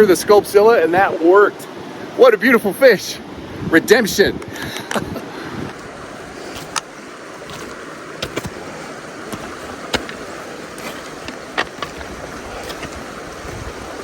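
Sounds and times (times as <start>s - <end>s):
mountain stream rushing: 0.0s - 14.0s
sharp water splashes: 5.8s - 14.0s.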